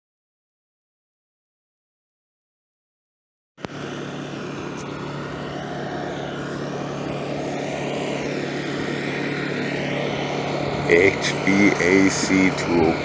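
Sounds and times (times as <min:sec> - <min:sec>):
mechanical drone: 0:03.6 - 0:13.0.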